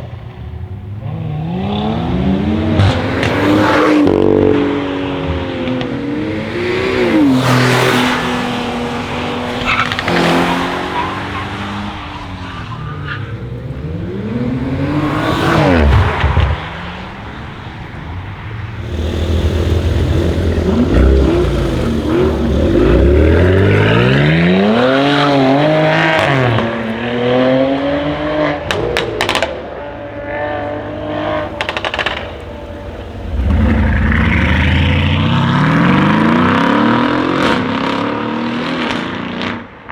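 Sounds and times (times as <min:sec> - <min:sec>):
car engine revving: 0:00.4 - 0:39.7
exhaust crackles and pops: 0:09.4 - 0:10.9, 0:18.7 - 0:24.4, 0:31.2 - 0:35.4.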